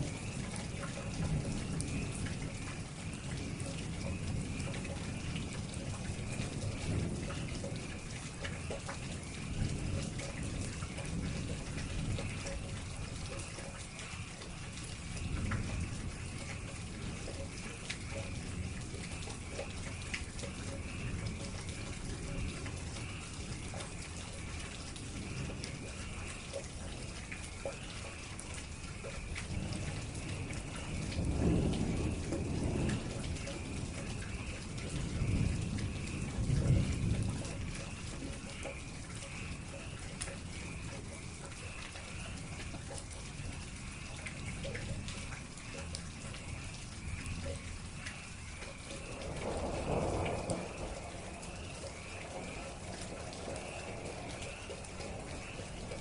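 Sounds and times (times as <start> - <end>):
raindrops ticking close by: 0.0 - 56.0
steady rain falling: 0.0 - 56.0.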